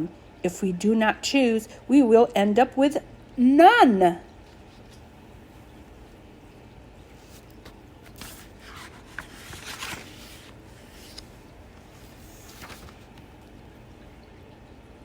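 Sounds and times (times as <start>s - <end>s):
paper pages rustling: 7.1s - 13.5s.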